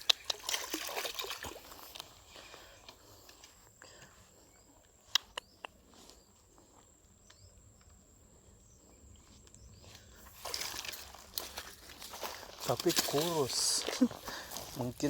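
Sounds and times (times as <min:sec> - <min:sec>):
sharp clicks: 0:05.1 - 0:05.8.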